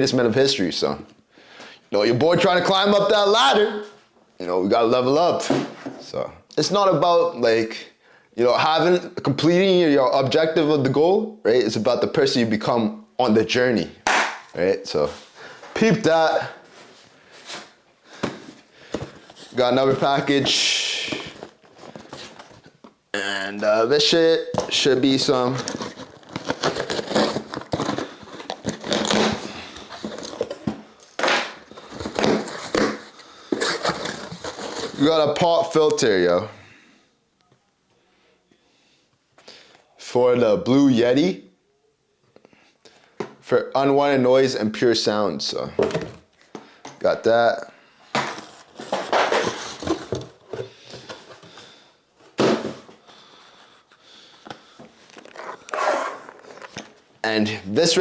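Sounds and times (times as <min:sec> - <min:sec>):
packaging crinkling and rustling: 0:16.9 - 0:22.9, 0:24.5 - 0:35.2, 0:48.2 - 0:57.1
packaging crinkling and tearing: 0:24.6 - 0:35.1, 0:55.0 - 0:57.0.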